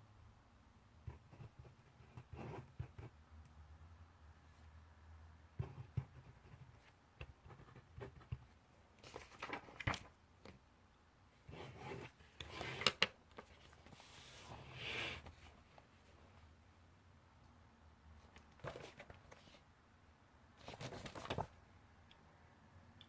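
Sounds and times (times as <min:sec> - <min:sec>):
pen scratching on paper: 0:01.1 - 0:03.1
paper rustling: 0:09.0 - 0:10.2, 0:18.4 - 0:19.6, 0:20.6 - 0:21.6.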